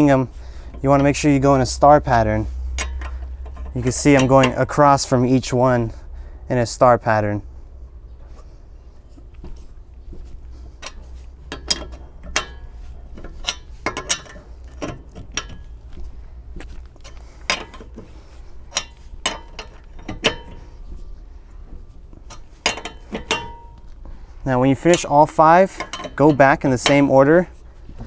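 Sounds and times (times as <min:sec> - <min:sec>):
wrench clinking on lug nuts: 0:00.0 - 0:05.2, 0:10.6 - 0:16.0, 0:17.0 - 0:20.8, 0:22.2 - 0:27.6
low steady hum: 0:00.0 - 0:28.0.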